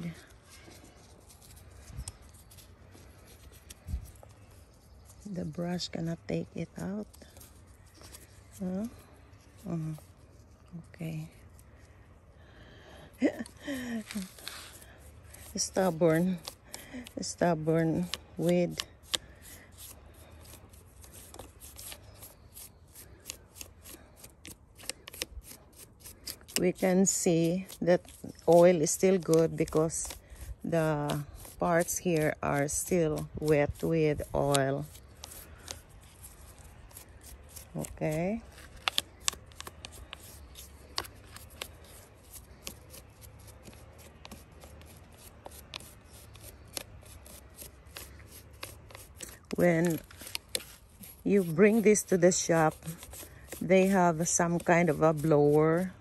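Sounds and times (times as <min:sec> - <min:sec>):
brush scrubbing: 0:13.2 - 0:56.0.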